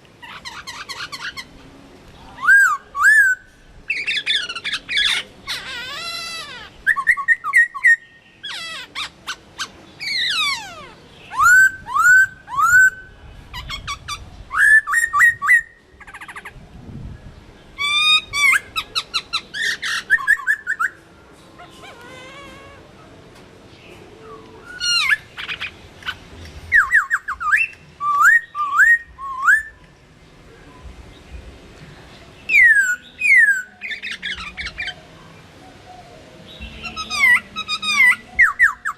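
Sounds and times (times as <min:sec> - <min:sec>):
songbird singing whistled phrases: 0:02.4 - 0:05.2, 0:05.9 - 0:16.3, 0:17.8 - 0:21.0, 0:24.2 - 0:30.0, 0:32.5 - 0:35.0, 0:36.0 - 0:38.9.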